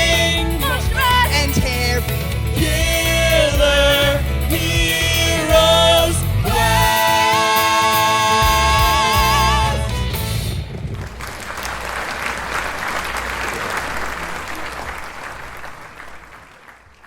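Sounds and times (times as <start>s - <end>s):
instrumental accompaniment: 0.0s - 10.7s
cast singing in harmony: 2.6s - 10.1s.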